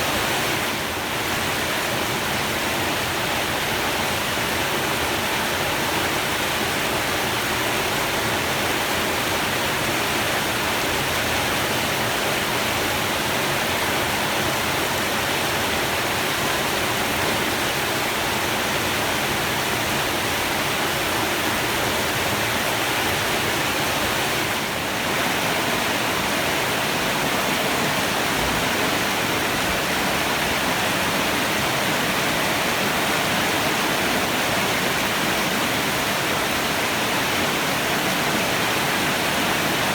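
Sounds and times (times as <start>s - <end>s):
heavy rain pouring: 8.7s - 39.9s.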